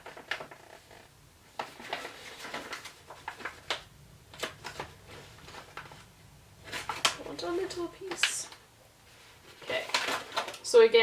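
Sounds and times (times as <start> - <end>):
plastic bag crinkling: 0.0 - 8.6.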